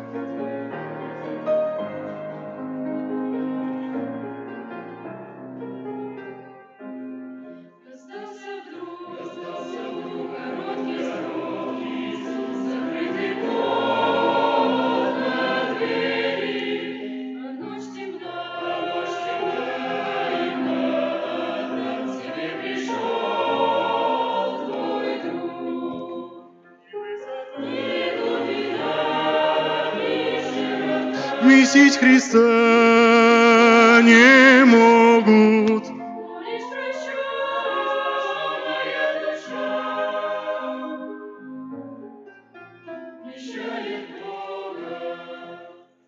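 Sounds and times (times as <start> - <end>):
choir singing a hymn: 0.0 - 5.5, 7.5 - 41.5, 43.2 - 46.0
sustained accompaniment tone: 27.6 - 36.8.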